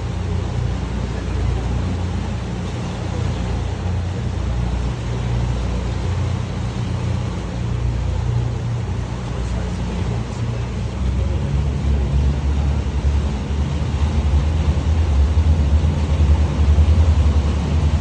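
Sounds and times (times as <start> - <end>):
boat engine droning: 0.0 - 18.0
water wash: 0.0 - 18.0.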